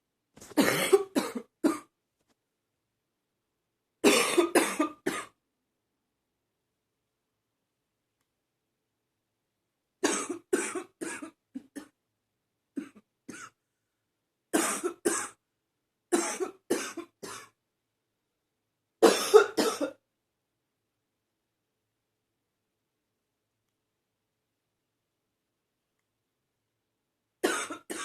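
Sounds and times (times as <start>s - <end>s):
woman's barking cough: 0.6s - 1.9s, 4.0s - 5.4s, 10.0s - 12.0s, 14.6s - 15.4s, 16.2s - 17.6s, 19.0s - 20.0s, 27.4s - 28.0s.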